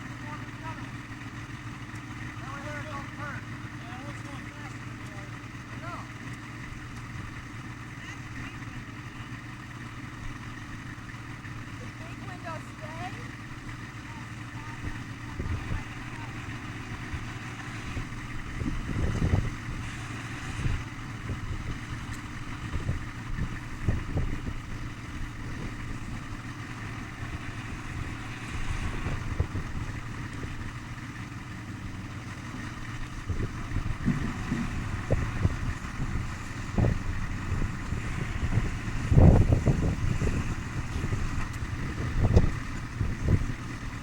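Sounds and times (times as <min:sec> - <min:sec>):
vehicle engine rumble: 0:00.0 - 0:44.0
wind on microphone: 0:18.0 - 0:19.9, 0:33.2 - 0:43.7
low thumps and knocks: 0:33.0 - 0:43.6.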